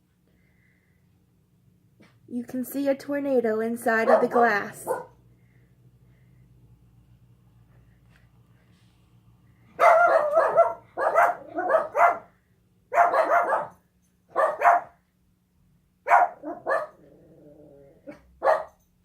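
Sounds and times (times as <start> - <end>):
dog barking: 4.0 - 5.2, 9.8 - 12.3, 12.9 - 15.0, 16.0 - 17.0, 18.1 - 18.8.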